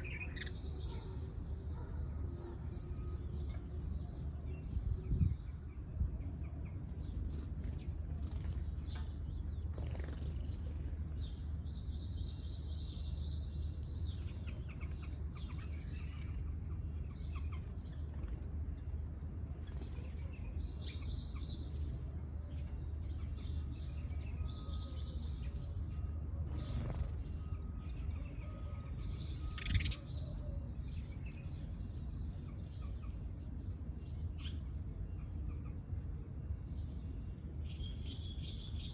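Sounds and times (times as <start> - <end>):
sparrows chirping: 0.0 - 38.9.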